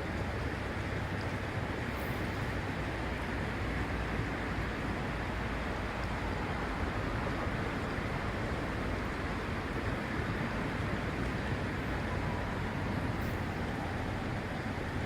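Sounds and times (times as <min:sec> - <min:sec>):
creek water rushing over rocks: 0:00.0 - 0:15.0.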